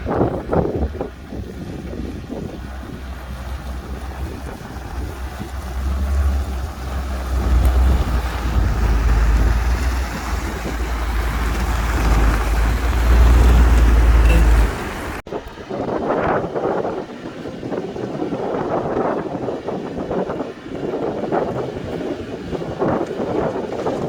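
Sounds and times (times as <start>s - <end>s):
wind buffeting microphone: 0.0s - 24.0s
earthmoving machinery rumbling: 0.1s - 15.2s.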